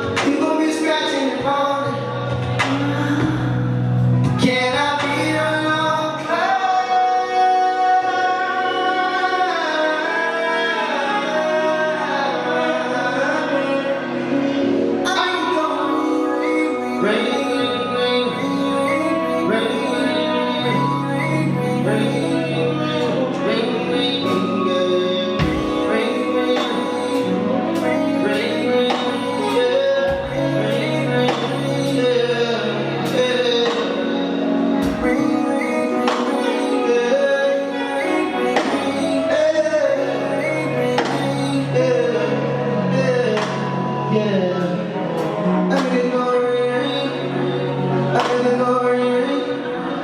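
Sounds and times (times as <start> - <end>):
steady bass: 0.0 - 9.6, 11.2 - 50.0
singer's bending vocal line: 0.0 - 50.0
slow live rnb song: 0.0 - 50.0.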